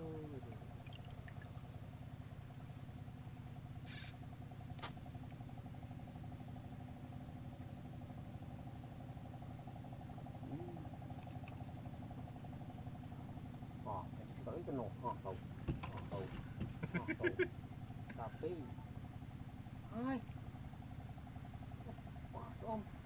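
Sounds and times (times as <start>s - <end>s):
insect trill: 0.0s - 23.0s
small engine droning: 0.0s - 23.0s
rustle: 3.2s - 6.2s
sharp click: 4.8s - 5.0s.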